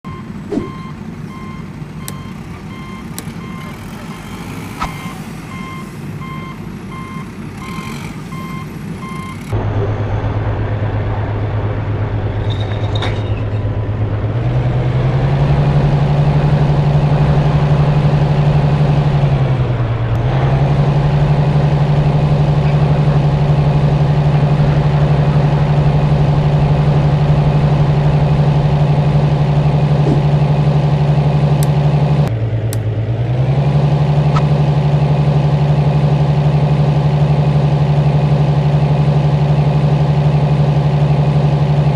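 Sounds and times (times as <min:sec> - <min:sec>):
heavy vehicle engine running: 0:00.0 - 0:41.9
reversing beeper: 0:00.1 - 0:10.1.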